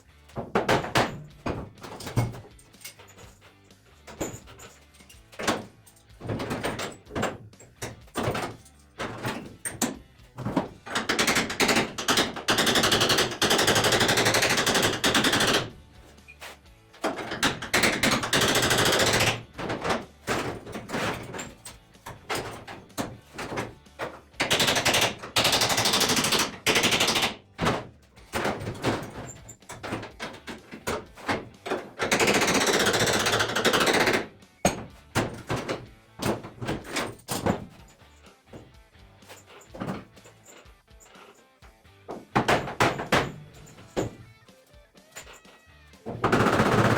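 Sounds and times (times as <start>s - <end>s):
sharp knocks on metal: 0.3s - 2.5s, 5.3s - 15.8s, 17.0s - 40.3s, 42.1s - 44.3s
rapid-fire power tool: 10.6s - 15.8s, 24.2s - 27.7s.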